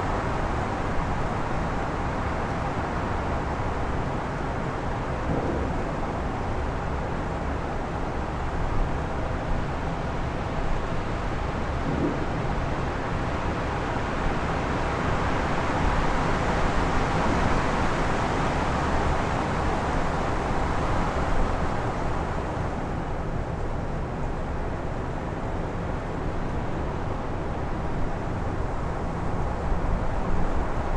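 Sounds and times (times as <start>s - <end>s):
low rumble: 5.2s - 7.1s, 11.8s - 13.4s.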